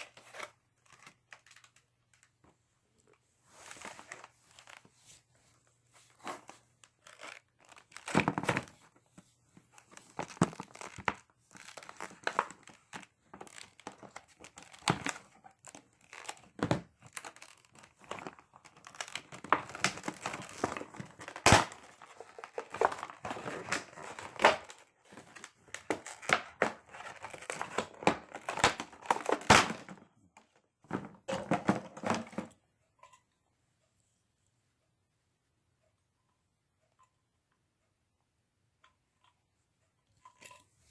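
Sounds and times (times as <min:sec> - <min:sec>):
packaging crinkling and tearing: 0:06.2 - 0:08.8, 0:09.8 - 0:29.9.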